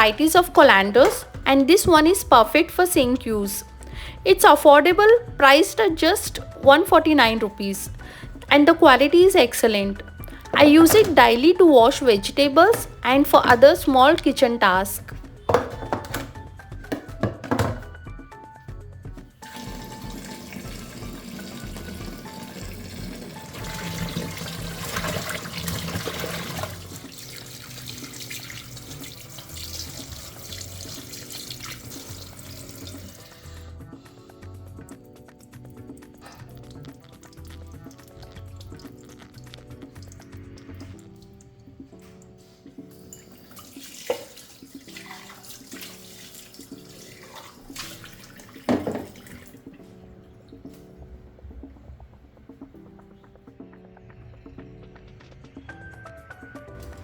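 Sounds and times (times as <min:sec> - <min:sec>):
soft background music: 0:00.0 - 0:57.0
tap water running into sink: 0:10.2 - 0:14.3, 0:15.4 - 0:17.9, 0:19.4 - 0:33.7, 0:35.7 - 0:51.0.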